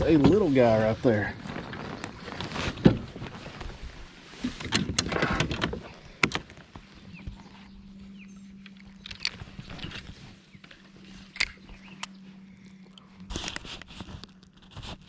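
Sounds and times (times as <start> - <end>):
faint steady hum: 5.8 - 15.0.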